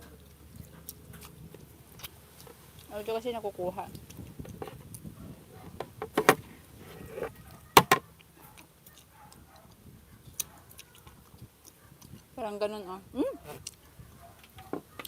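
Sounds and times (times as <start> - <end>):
faint small crackles: 3.9 - 12.3.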